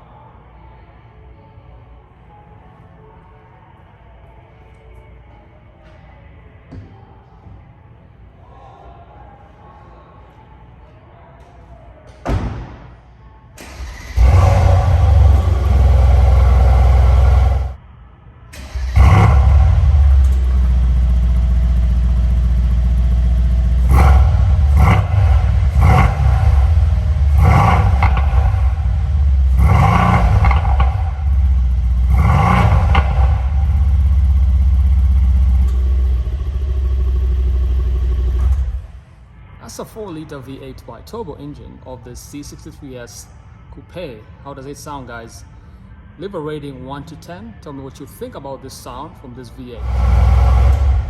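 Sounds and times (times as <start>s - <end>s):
car engine starting and revving: 13.6s - 17.8s, 18.6s - 39.0s, 49.8s - 51.0s
exhaust popping and crackling: 14.1s - 17.8s, 18.8s - 38.8s.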